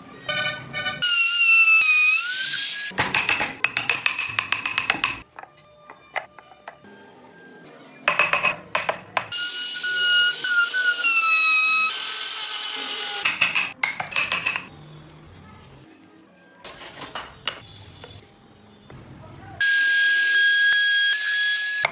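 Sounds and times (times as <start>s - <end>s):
small power tool whining: 9.4s - 13.2s.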